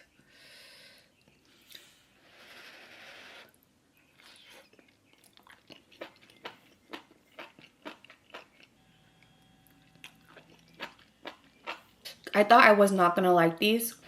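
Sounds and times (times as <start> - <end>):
chewing food: 3.5 - 12.4.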